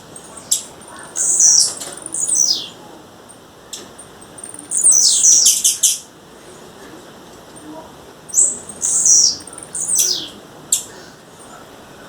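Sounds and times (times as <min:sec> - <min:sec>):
bird calling high rapid chips: 0:00.0 - 0:02.8, 0:04.0 - 0:06.1, 0:08.3 - 0:11.0.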